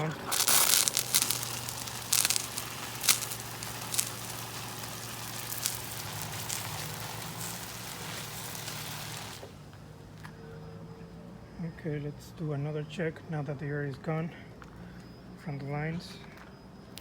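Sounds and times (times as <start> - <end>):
pressure washer spitting cracks: 0.0 - 9.6
pressure washer spraying: 0.0 - 9.6.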